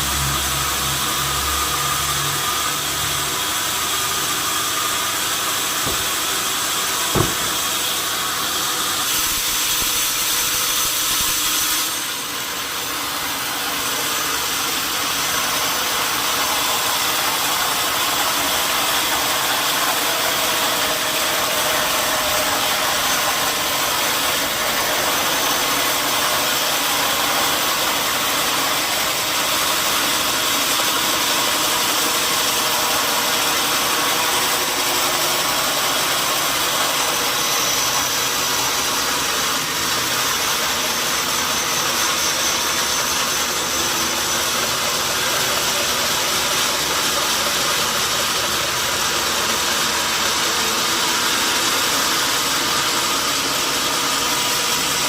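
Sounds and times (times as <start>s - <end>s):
sawmill machinery running: 0.0s - 55.0s
sharp knock: 5.8s - 8.2s.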